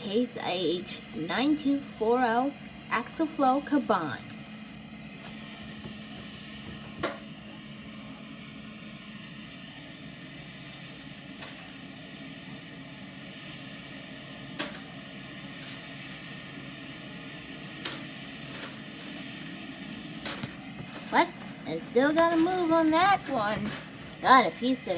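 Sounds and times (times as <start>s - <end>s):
combine harvester running: 0.0s - 24.9s.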